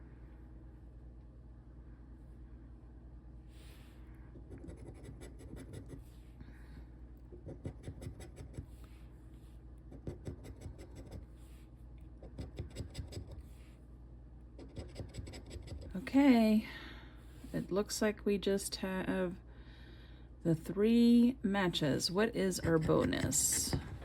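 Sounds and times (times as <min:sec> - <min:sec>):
scratching scratch-off ticket: 0:22.4 - 0:23.9.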